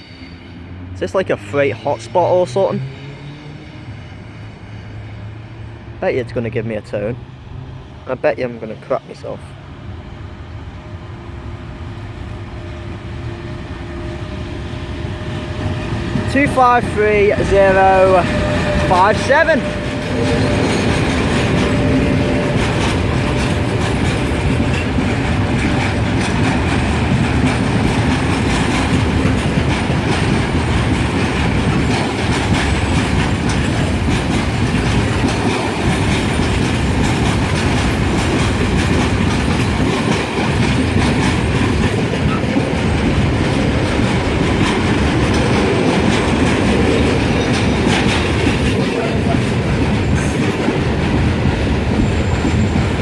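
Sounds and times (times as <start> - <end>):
freight train rumbling: 0.0 - 53.0
wheels clattering over rail joints: 15.7 - 53.0.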